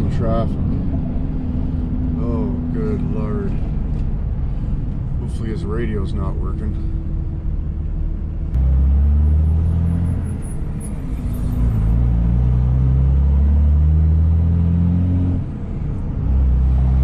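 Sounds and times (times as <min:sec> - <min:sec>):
car engine and road rumble: 0:00.0 - 0:17.0.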